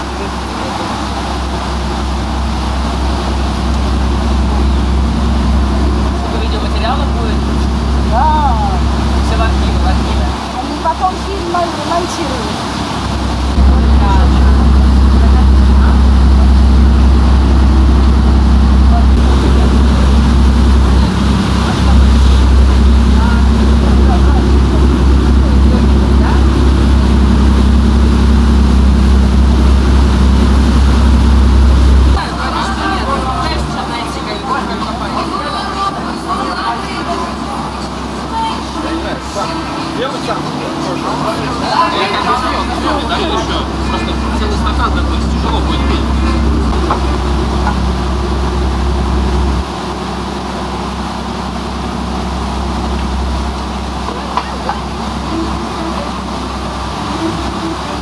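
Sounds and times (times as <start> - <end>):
boat engine humming: 0.0 - 58.0
water noise: 0.0 - 58.0.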